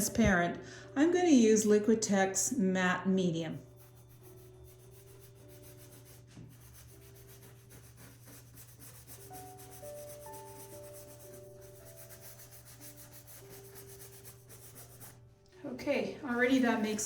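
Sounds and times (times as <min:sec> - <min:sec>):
soft music of held notes: 0:00.0 - 0:17.0
paintbrush scrubbing canvas: 0:03.6 - 0:15.2, 0:16.3 - 0:17.0.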